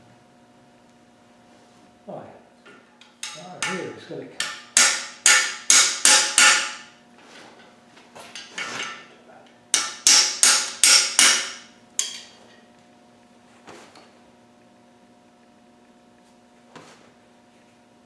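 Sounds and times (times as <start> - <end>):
hammer on metal: 3.0 - 6.9, 9.8 - 12.3.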